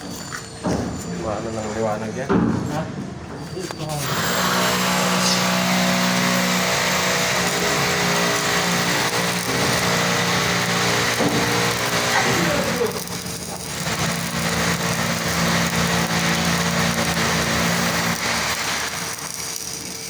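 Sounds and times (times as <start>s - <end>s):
welding arc crackling and buzzing: 4.0s - 20.0s.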